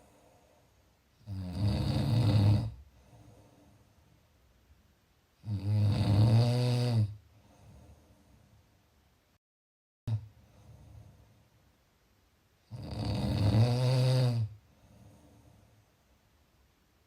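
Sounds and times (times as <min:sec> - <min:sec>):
soft breathing: 0:00.0 - 0:01.1, 0:02.8 - 0:04.4, 0:07.2 - 0:08.8, 0:10.3 - 0:11.6, 0:14.5 - 0:16.2
person snoring: 0:01.2 - 0:03.5, 0:05.4 - 0:07.9, 0:12.7 - 0:15.3.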